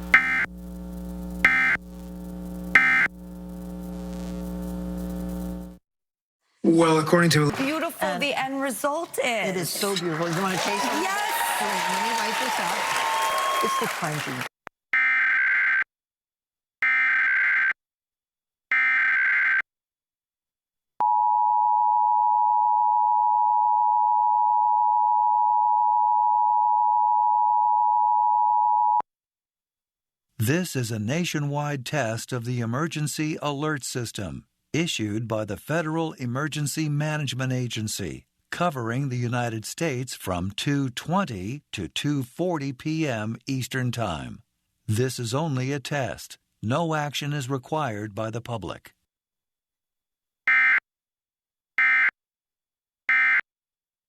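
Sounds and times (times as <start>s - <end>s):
digital data tone bursts: 0.0s - 3.2s
low electrical hum: 0.0s - 5.8s
two-tone attention signal: 0.1s - 0.5s, 2.8s - 3.1s.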